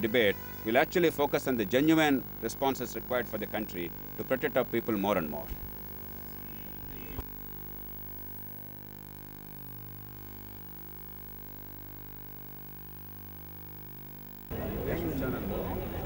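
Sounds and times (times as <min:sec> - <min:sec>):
steady electrical hum: 0:00.0 - 0:16.0.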